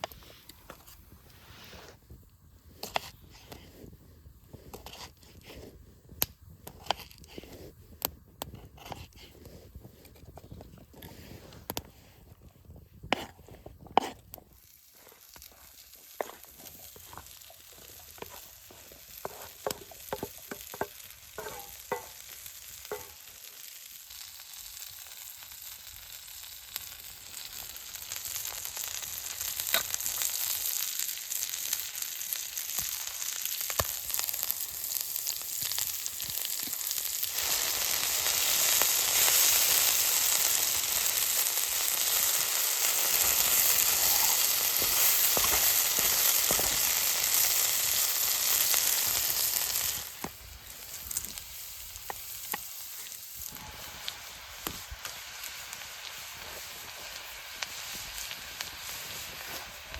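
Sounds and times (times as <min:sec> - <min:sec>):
food sizzling in a pan: 0:13.1 - 0:59.9.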